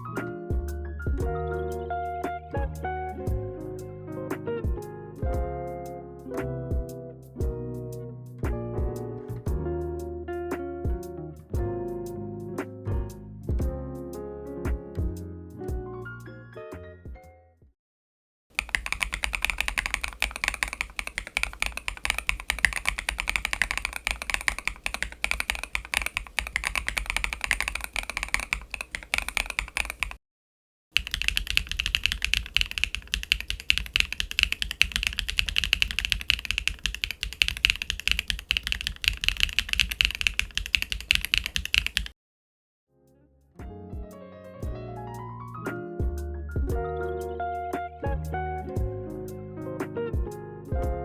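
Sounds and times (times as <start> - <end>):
mechanical keyboard typing: 18.6 - 30.2, 31.0 - 42.1.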